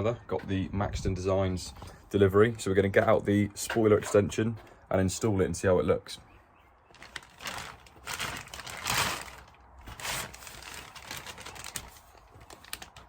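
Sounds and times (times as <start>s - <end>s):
packaging crinkling: 6.9s - 13.0s.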